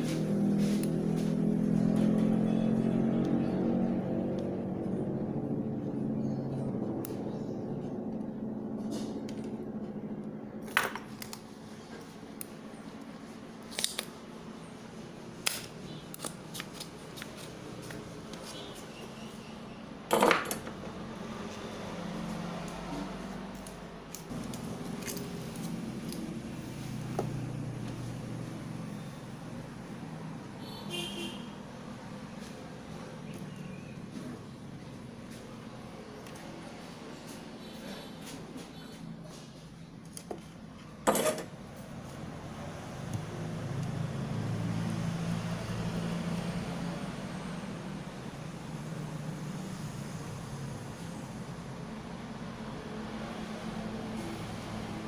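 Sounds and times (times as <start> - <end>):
motor vehicle passing: 0.0 - 13.6, 20.7 - 40.0, 40.8 - 55.0
steady low hum: 3.6 - 20.1.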